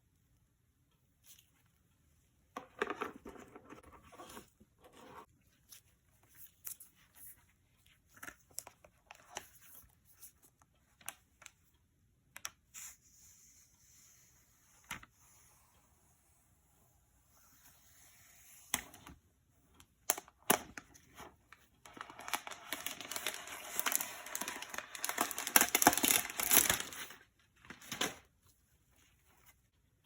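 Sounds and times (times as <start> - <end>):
packaging rustling and tearing: 22.0 - 27.2.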